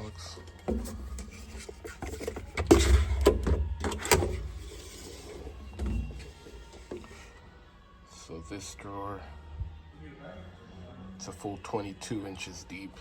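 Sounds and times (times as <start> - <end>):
low rumble of handling: 0.0 - 7.5
toolbox drawer clunks and rattles: 0.5 - 7.2.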